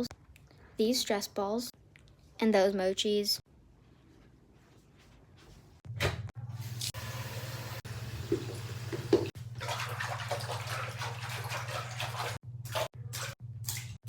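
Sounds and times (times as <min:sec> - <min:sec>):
tap water running and splashing: 0:06.6 - 0:14.0.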